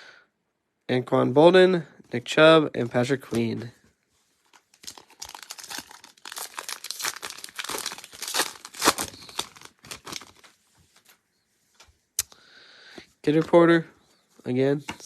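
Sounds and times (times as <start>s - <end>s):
plastic wrapper crackling: 4.4s - 11.1s.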